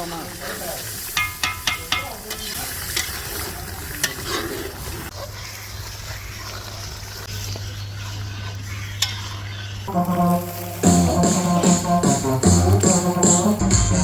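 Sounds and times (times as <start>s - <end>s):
food sizzling in a pot: 0.0s - 4.4s, 7.6s - 11.6s
metal spatula clinking on pot: 1.2s - 3.2s.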